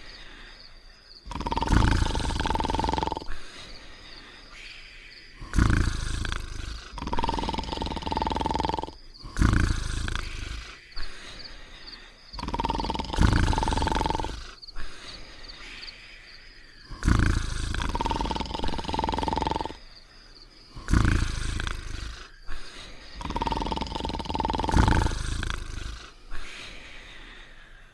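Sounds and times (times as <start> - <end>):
cartoon dogs snoring: 1.2 - 3.9, 5.4 - 15.6, 16.8 - 20.0, 20.7 - 26.9
whistling exhale: 1.6 - 19.9, 20.7 - 27.9.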